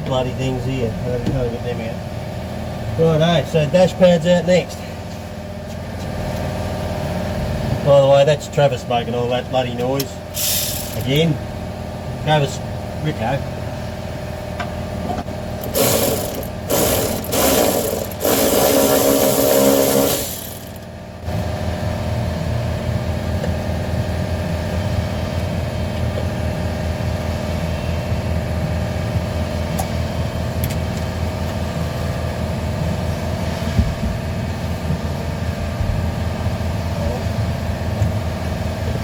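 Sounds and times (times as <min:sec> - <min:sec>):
engine idling: 0:00.0 - 0:21.5
loud bursts of harsh noise: 0:10.3 - 0:11.2, 0:15.6 - 0:20.8.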